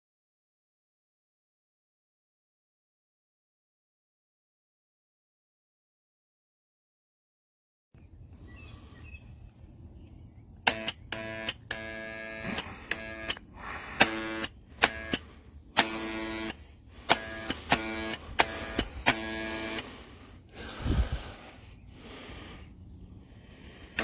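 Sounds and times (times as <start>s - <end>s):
electric impact wrench bursts: 10.7s - 20.8s.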